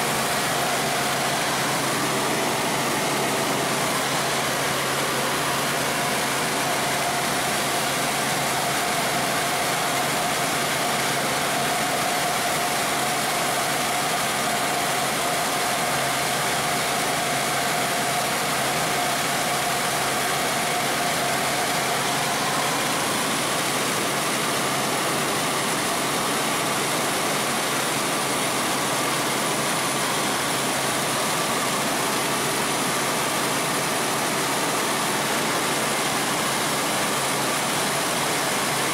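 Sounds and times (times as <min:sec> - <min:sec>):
helicopter engine and rotor noise: 0:00.0 - 0:38.9.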